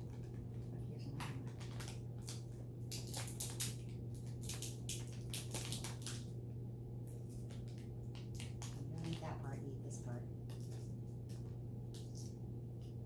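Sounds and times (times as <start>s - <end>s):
packaging crinkling: 0.0s - 6.3s
steady low hum: 0.0s - 13.0s.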